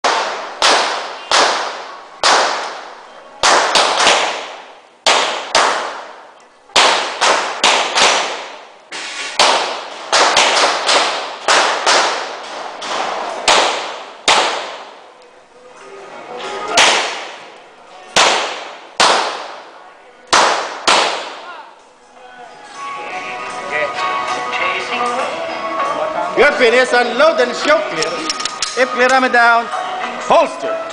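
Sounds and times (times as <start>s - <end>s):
pistol shots with echo: 0.0s - 8.7s, 9.4s - 15.0s, 16.8s - 17.5s, 18.1s - 19.7s, 20.3s - 21.5s.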